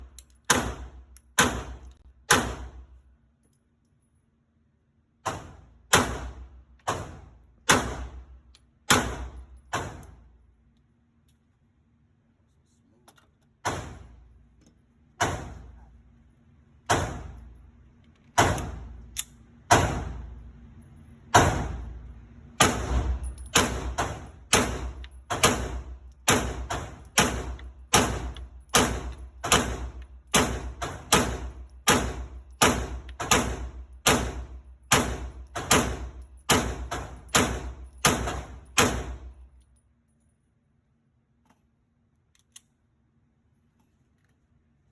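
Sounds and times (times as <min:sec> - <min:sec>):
pistol shots: 0:00.5 - 0:02.8, 0:05.2 - 0:08.3, 0:22.6 - 0:39.3.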